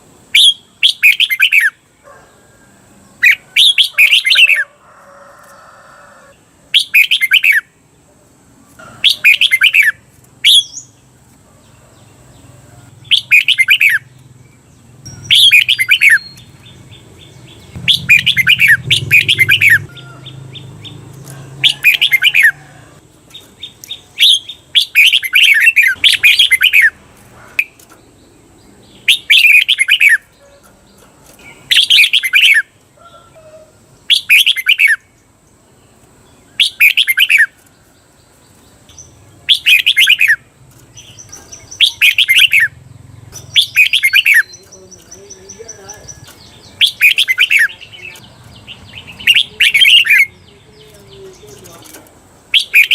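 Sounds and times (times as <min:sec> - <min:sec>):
bird singing whistled phrases: 0:00.4 - 0:01.8, 0:06.8 - 0:07.7, 0:09.2 - 0:10.9, 0:13.1 - 0:14.1, 0:15.1 - 0:16.5, 0:17.8 - 0:20.0, 0:24.2 - 0:26.9, 0:31.7 - 0:32.7, 0:34.1 - 0:35.1, 0:36.6 - 0:37.5, 0:39.5 - 0:40.4, 0:41.7 - 0:42.8, 0:43.5 - 0:44.7, 0:45.4 - 0:48.1, 0:49.1 - 0:50.4, 0:52.5 - 0:52.9.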